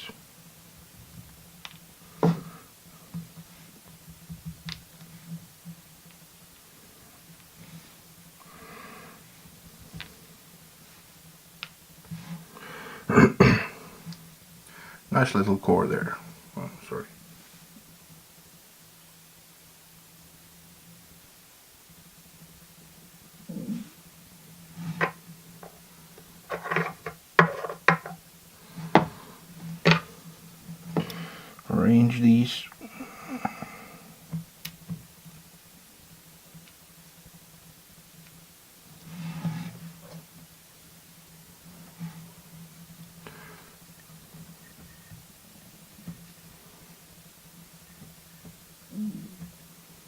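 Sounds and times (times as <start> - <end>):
steady low hum: 0.0 - 50.0
man breathing through nose: 8.4 - 9.3, 12.5 - 13.1, 14.6 - 15.1, 31.0 - 31.6
man clearing throat: 13.1 - 13.8
faint small clicks: 34.3 - 35.0.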